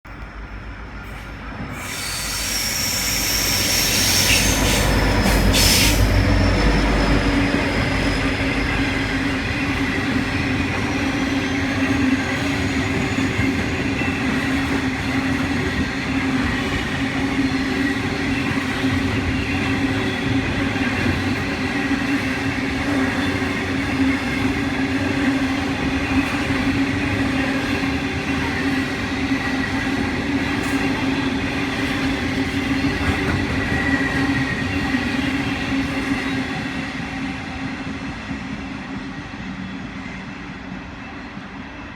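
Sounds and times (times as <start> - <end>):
diesel locomotives passing: 0.1 - 41.9
high wheel squeal: 1.8 - 9.1.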